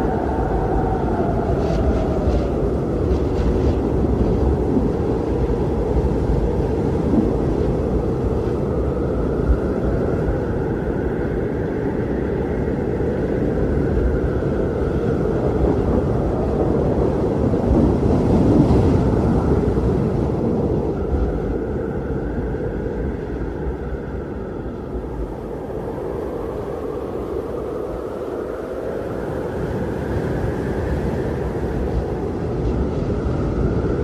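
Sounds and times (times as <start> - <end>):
faint wind whistle: 0.0 - 34.0
strong wind blowing: 0.0 - 34.0.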